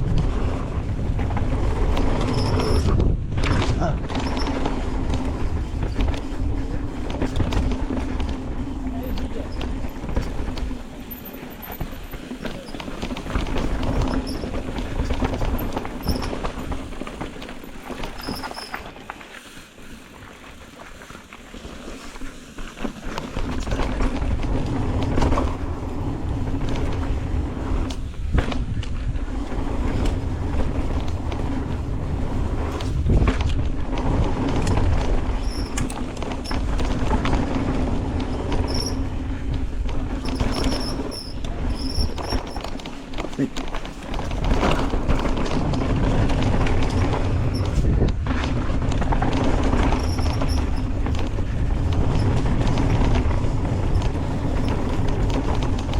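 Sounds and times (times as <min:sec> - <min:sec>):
bike rattling and knocking: 0:00.0 - 0:55.9
bike tyres rolling on dirt: 0:00.0 - 0:55.9.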